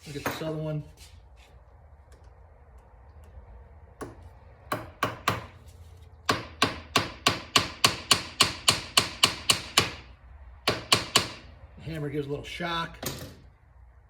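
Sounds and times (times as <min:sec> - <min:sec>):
hammer striking impact driver: 0:06.3 - 0:10.1.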